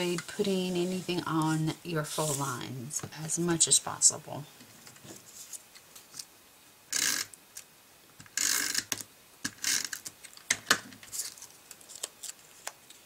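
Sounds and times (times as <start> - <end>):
card stock scraping and rustling: 11.1 - 12.8.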